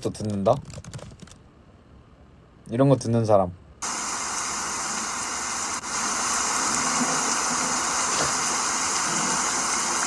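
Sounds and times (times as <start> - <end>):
heavy pouring rain: 3.8 - 10.0.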